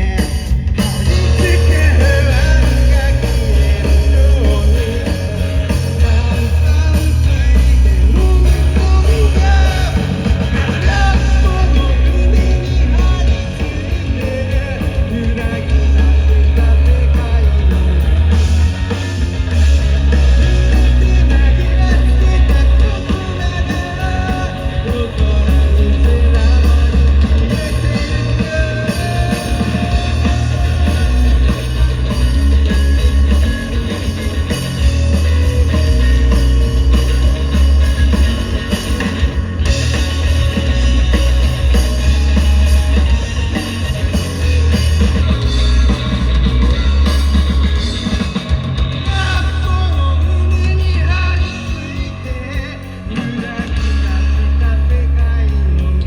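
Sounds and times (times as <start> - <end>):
person singing: 0.0 - 18.1, 20.4 - 37.4, 49.0 - 56.0
heavy bass line: 0.0 - 56.0
rock band playing: 0.0 - 56.0.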